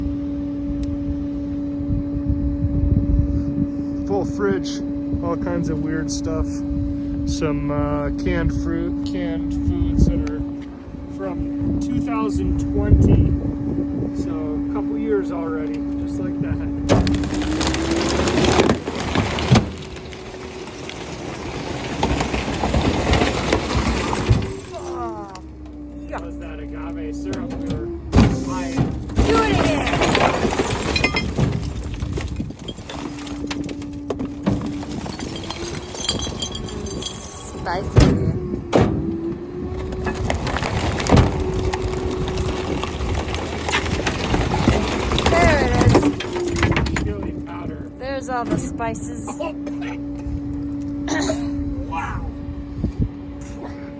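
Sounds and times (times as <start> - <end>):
steady low hum: 0.0 - 17.7, 30.3 - 53.9
low steady rumble: 0.0 - 53.9
crunching and splintering: 16.8 - 25.6, 27.3 - 39.0, 39.7 - 48.9
containers clicking and rattling: 40.1 - 47.2.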